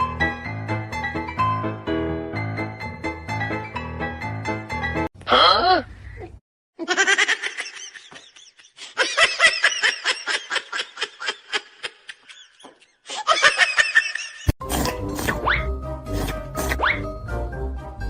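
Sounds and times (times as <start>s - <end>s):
person giggling: 5.3s - 14.5s.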